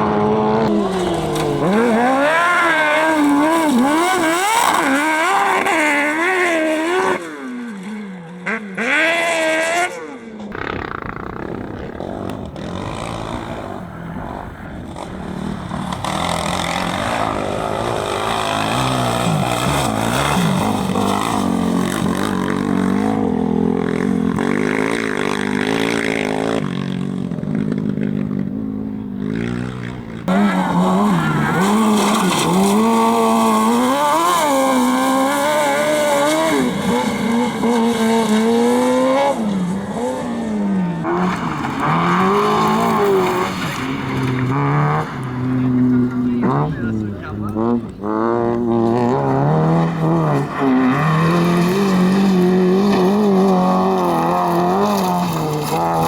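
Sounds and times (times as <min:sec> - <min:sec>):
competition engine revving: 0:00.0 - 0:56.0.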